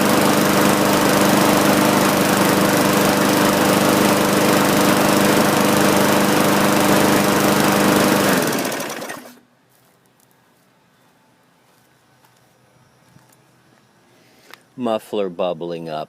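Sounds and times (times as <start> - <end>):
push mower engine running: 0.0 - 9.4.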